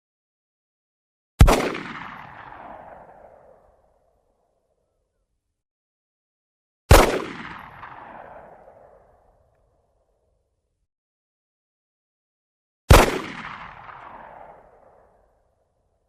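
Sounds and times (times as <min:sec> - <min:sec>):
gunshots with echoing tail: 0:01.4 - 0:04.6, 0:06.9 - 0:09.9, 0:12.9 - 0:15.6.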